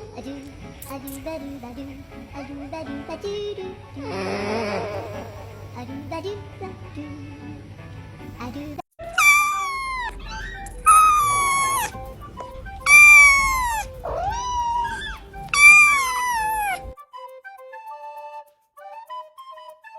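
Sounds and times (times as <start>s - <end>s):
faint background music: 0.0s - 19.9s
cat snoring with whistling squeal: 9.1s - 17.0s.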